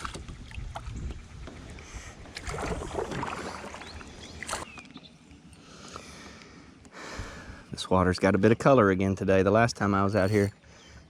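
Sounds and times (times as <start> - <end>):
water sloshing: 0.0 - 4.7.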